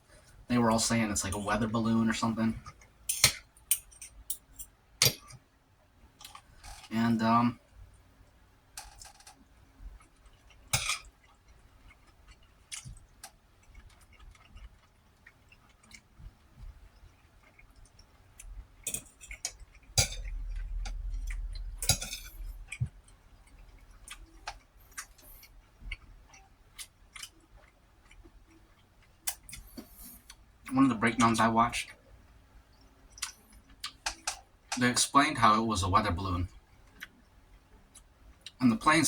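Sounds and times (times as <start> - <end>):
person chewing: 10.0 - 16.1, 17.1 - 30.4, 33.2 - 34.4.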